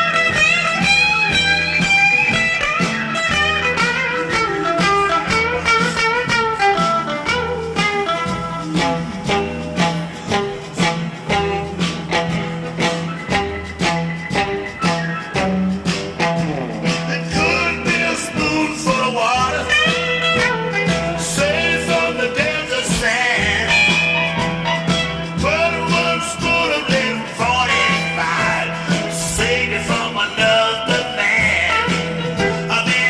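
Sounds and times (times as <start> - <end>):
rock music with guitar: 0.0 - 33.0
person singing: 16.9 - 24.5, 25.4 - 33.0.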